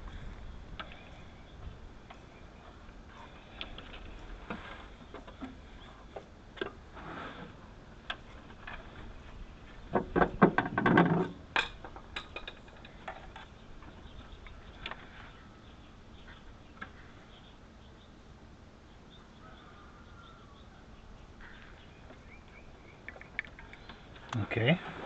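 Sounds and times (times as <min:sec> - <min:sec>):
metal tools clicking and knocking: 0:11.6 - 0:13.3.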